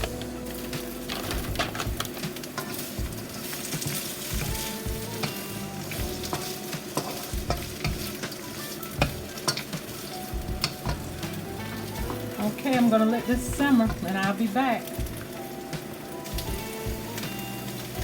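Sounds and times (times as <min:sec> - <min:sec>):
vegetables sizzling in oil: 0:00.0 - 0:18.0
wooden spoon knocking on pan: 0:06.0 - 0:08.4, 0:09.0 - 0:11.2.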